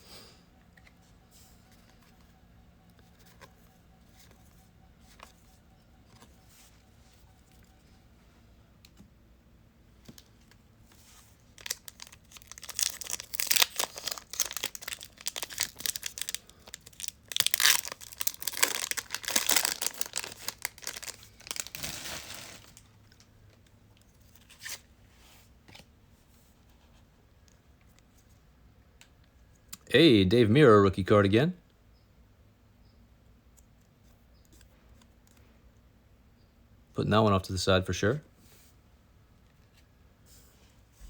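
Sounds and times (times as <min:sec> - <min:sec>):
wrapper tearing and crinkling: 0:11.6 - 0:22.9.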